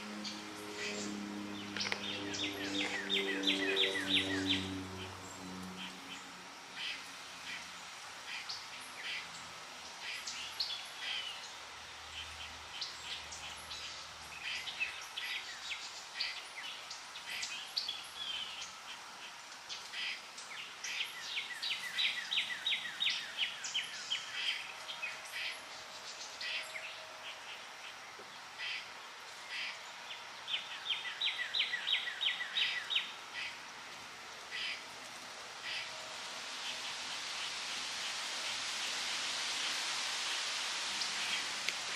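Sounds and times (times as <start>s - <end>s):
birds chirping and singing: 0.0s - 7.0s
flowing water: 32.4s - 41.9s.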